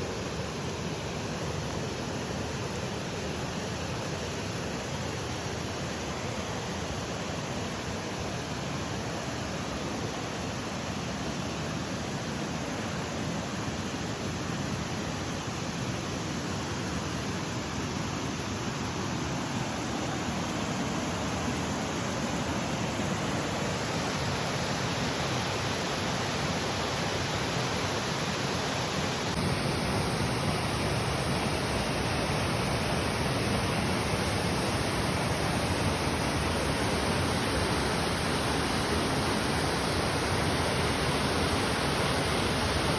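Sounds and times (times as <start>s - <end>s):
waterfall rushing: 18.1s - 42.9s.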